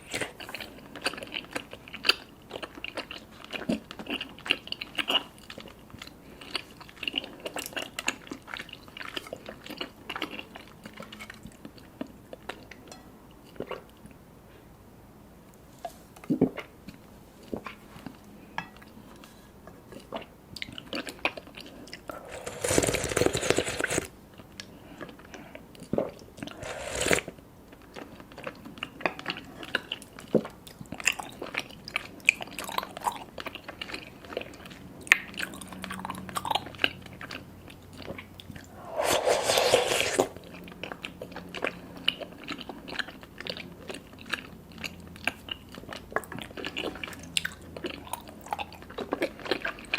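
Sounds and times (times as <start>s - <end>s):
chewing sticky food: 0.0s - 14.2s, 18.9s - 49.9s
slurping through a straw: 22.1s - 24.1s, 26.4s - 27.4s, 38.7s - 40.5s.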